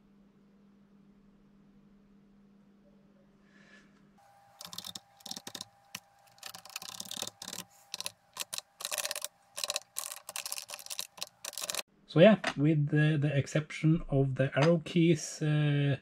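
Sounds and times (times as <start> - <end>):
keyboard keys clicking: 4.6 - 11.8.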